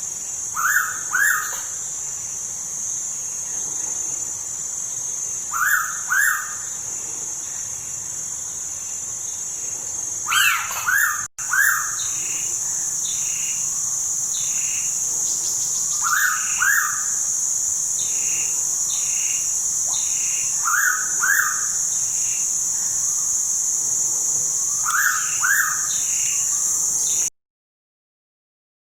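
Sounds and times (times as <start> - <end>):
high insect hiss: 0.0 - 27.3
small bird chirps: 10.3 - 13.6, 14.3 - 17.2, 18.0 - 22.5, 24.8 - 27.3.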